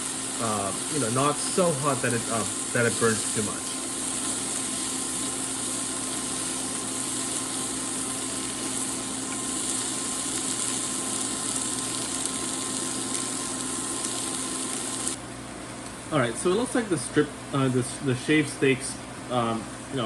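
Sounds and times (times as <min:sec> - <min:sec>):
meat frying in a pan: 0:00.0 - 0:15.2.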